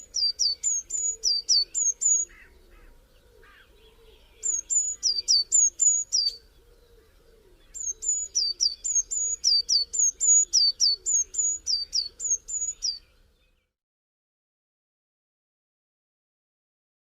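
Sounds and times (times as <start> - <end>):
bird singing high sharp notes: 7.8 - 13.0.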